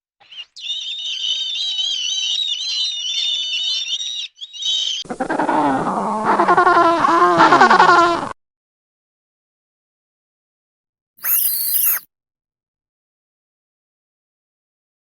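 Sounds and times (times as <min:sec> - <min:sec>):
high-pitched warbling animal calls: 0:11.2 - 0:12.0
low pitch-bending animal calls: 0:11.2 - 0:12.0.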